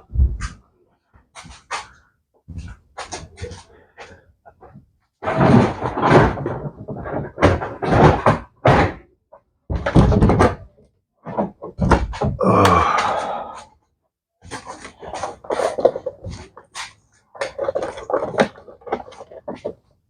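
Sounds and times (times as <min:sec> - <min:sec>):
knocks and clunks of parts: 0:01.3 - 0:13.2.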